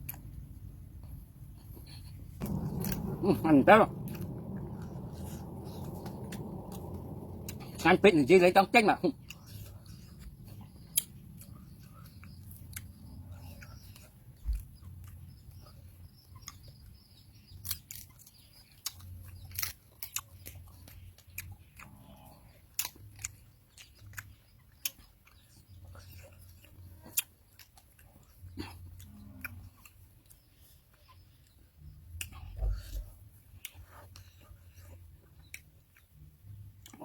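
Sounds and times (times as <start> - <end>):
people chewing food: 0.0 - 37.0
food crunches and clicks: 9.2 - 37.0.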